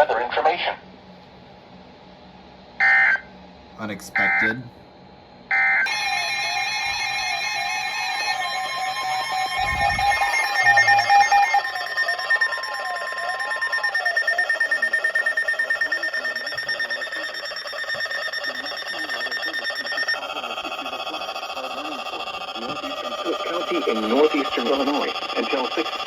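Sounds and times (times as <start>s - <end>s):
steady higher alarm tone: 5.5s - 26.0s
warbling alarm tone: 5.5s - 26.0s
steady alert tone: 5.9s - 20.2s.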